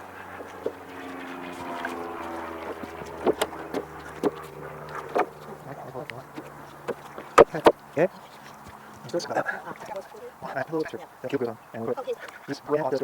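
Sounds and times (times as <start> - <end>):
low drone: 0.0 - 9.1
engine-like hum: 0.0 - 13.0
sharp knocks: 2.7 - 5.5, 6.3 - 7.8.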